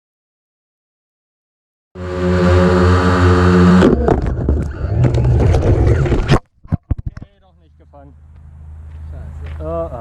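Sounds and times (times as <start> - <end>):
drone motors and propellers: 2.0 - 6.4.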